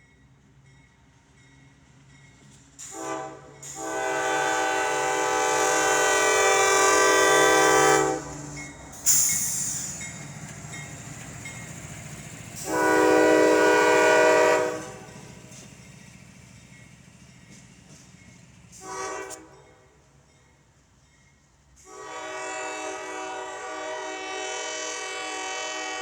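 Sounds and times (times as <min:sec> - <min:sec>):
passing train rumble: 0:00.0 - 0:26.0
locomotive air horn blasts: 0:02.9 - 0:08.4, 0:12.6 - 0:15.2, 0:18.8 - 0:19.7, 0:21.8 - 0:26.0.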